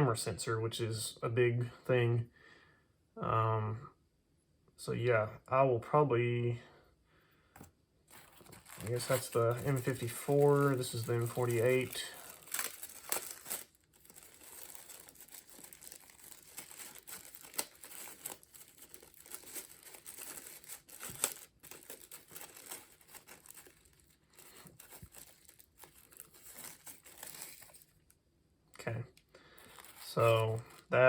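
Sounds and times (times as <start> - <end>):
packaging crinkling: 8.1 - 28.1, 29.5 - 30.9.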